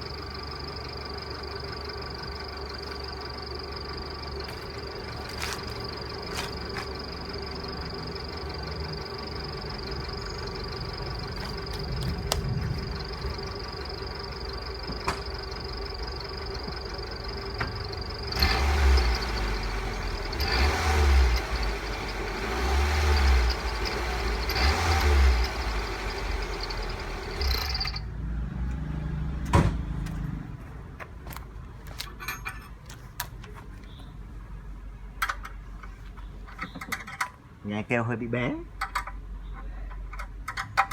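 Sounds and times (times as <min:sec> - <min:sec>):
small car engine idling and revving: 0:00.0 - 0:32.4.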